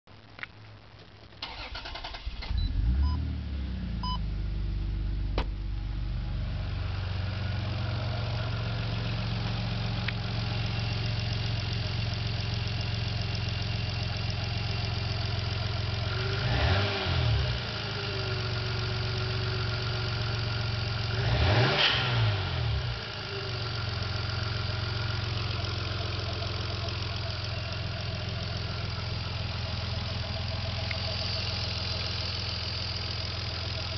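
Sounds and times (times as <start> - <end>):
car engine starting and idling: 1.4 - 33.9
car engine revving: 15.9 - 19.9, 21.0 - 33.9.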